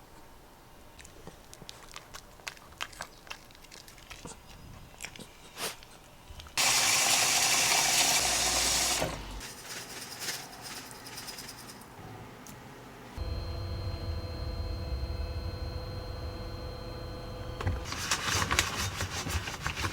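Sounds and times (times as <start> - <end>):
water running from a tap: 6.6 - 9.3.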